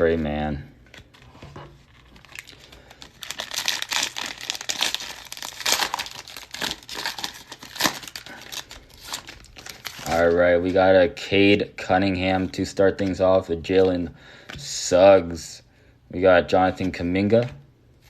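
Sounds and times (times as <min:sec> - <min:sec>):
cellophane wrapper tearing and crinkling: 0:01.8 - 0:10.4.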